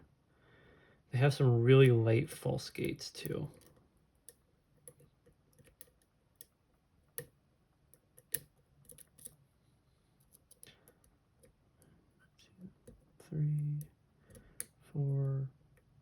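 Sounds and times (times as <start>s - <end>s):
lock pick metallic clicks: 7.9s - 9.4s.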